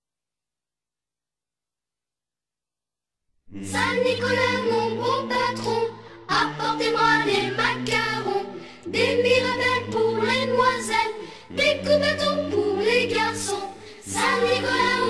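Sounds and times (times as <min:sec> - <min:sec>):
voices singing over music: 0:03.5 - 0:15.0.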